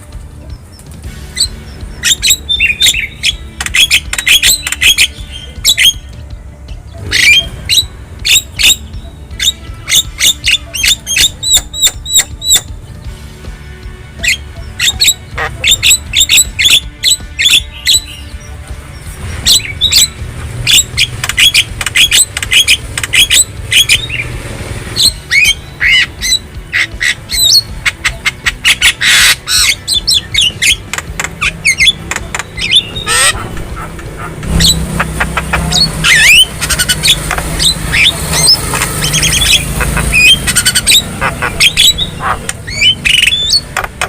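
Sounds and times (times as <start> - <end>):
bird chirping and whistling: 0.7 - 6.1, 6.8 - 12.8, 14.2 - 43.9.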